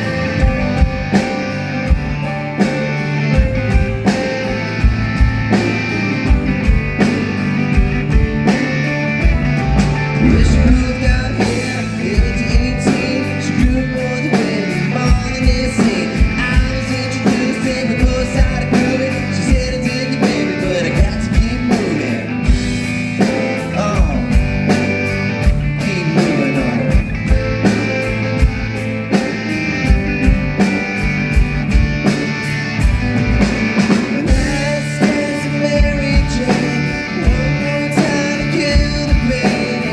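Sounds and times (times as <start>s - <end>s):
drum kit beat: 0.0s - 39.9s
electric guitars: 0.0s - 39.9s
person singing: 9.6s - 22.4s, 25.8s - 27.1s, 33.9s - 39.9s.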